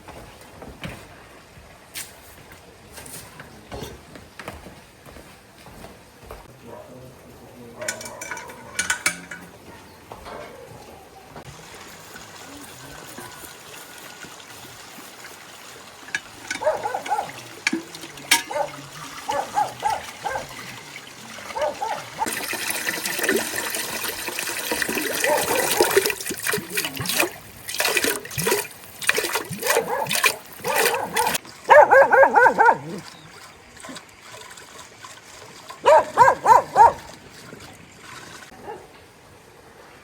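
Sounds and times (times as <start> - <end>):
water pouring: 7.8 - 9.6, 11.4 - 38.6.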